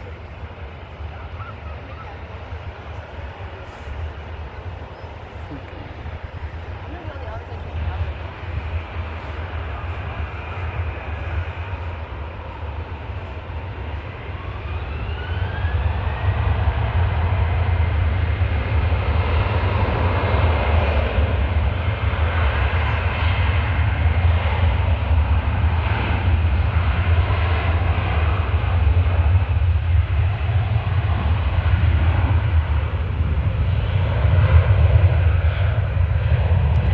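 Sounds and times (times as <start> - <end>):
jet engine rising whine: 0.0 - 36.9
jet engines deep rumble: 0.0 - 36.9.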